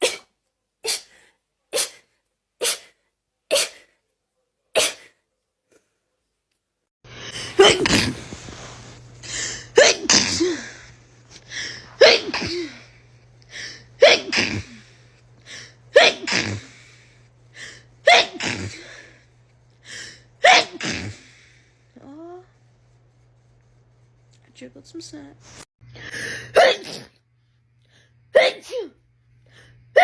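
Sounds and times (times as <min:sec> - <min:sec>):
person sneezing: 0:00.0 - 0:04.0, 0:04.7 - 0:05.2, 0:07.2 - 0:17.0, 0:17.6 - 0:19.1, 0:20.4 - 0:21.6, 0:26.1 - 0:27.2, 0:28.4 - 0:29.0
steady low hum: 0:07.1 - 0:26.6.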